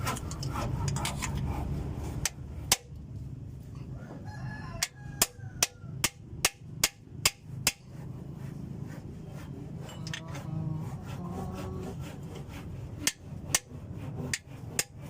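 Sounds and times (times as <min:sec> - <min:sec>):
rooster crowing: 0:03.9 - 0:06.0.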